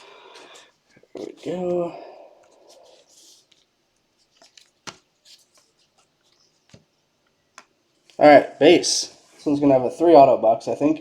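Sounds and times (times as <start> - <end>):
trading cards rustling: 2.5 - 6.9.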